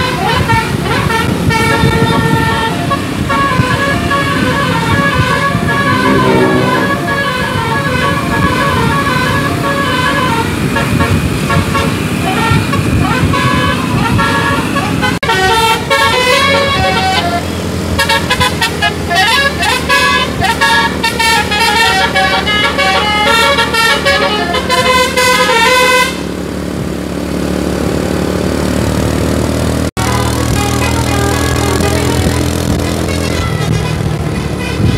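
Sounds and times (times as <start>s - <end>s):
musical air horn melody: 0.0s - 26.3s, 30.0s - 34.9s
bus engine running: 0.0s - 34.9s.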